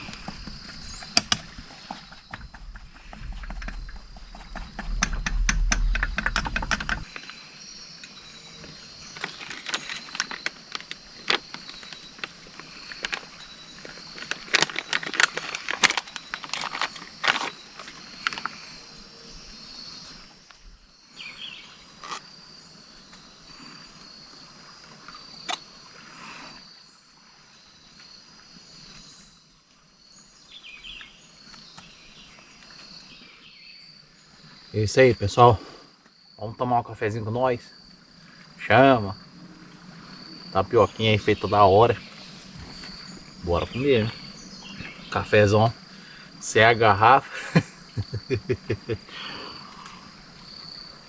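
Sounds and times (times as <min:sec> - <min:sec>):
sharp clicks and knocks: 0:00.0 - 0:07.2
high insect drone: 0:00.0 - 0:51.0
low rumble: 0:02.4 - 0:07.1.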